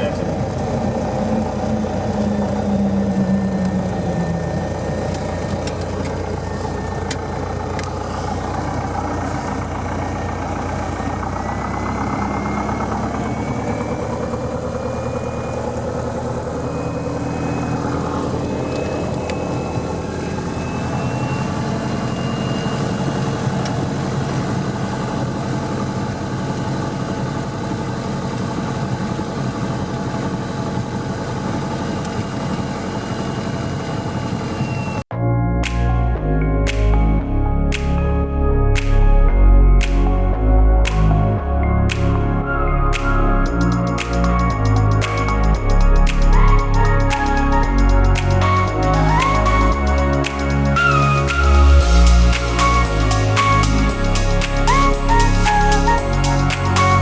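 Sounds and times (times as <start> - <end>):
faint rising tone: 0.0 - 23.9, 35.2 - 57.0
aircraft engine and propeller running: 0.0 - 35.0.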